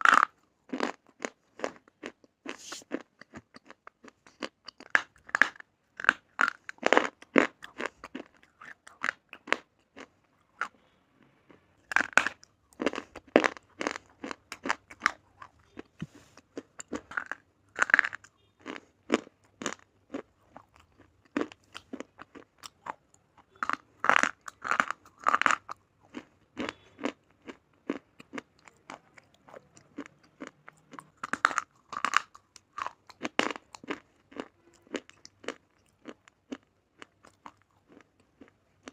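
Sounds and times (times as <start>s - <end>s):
person crunching slate pencils: 2.6s - 10.8s, 11.9s - 36.2s.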